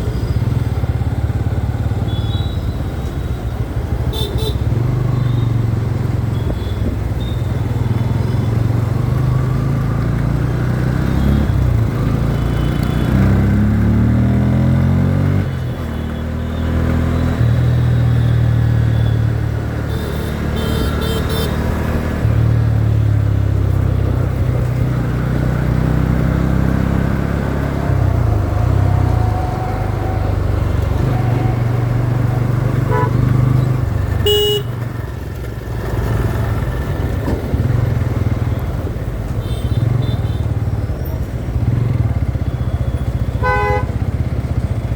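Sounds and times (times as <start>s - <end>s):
motorcycle engine running: 30.0s - 39.1s.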